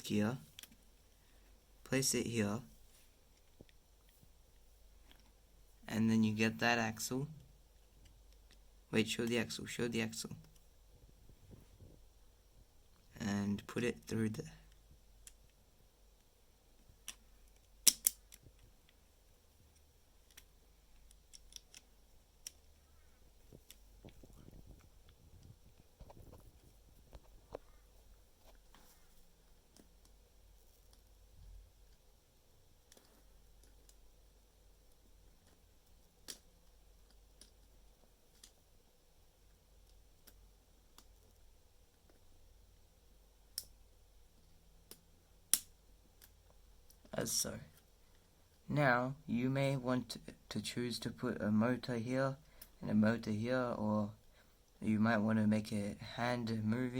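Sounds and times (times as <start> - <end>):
plastic parts clicking: 17.0 - 18.7.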